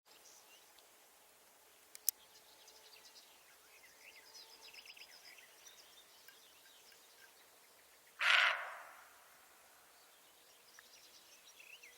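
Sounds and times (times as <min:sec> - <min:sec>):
small birds chirping and trilling: 0:01.7 - 0:09.0, 0:09.8 - 0:11.9.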